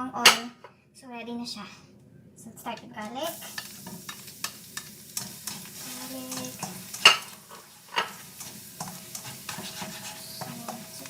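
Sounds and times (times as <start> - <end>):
garlic sizzling in hot oil: 3.1 - 11.0
utensil scraping pan: 3.3 - 11.0.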